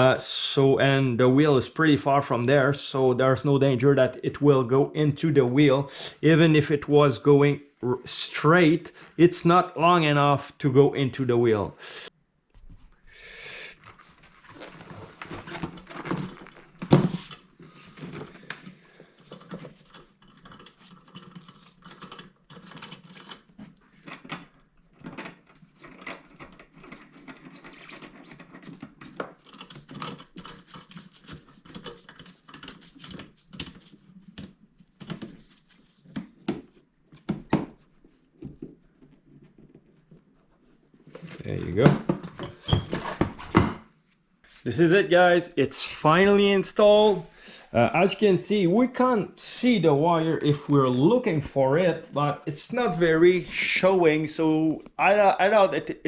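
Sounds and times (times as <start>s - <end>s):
clicks taps and rubbing: 18.0s - 41.3s.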